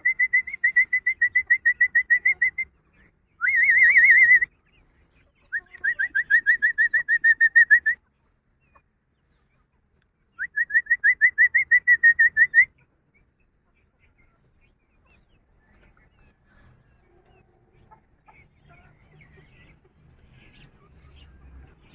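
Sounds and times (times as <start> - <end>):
bird singing whistled trills: 3.4 - 4.6.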